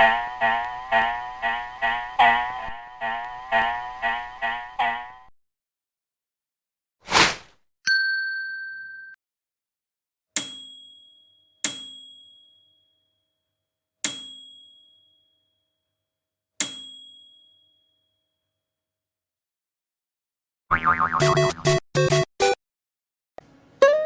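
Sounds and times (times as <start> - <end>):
bell-like dings: 0.0 - 5.3, 7.9 - 9.2
steady high tone: 0.0 - 5.3.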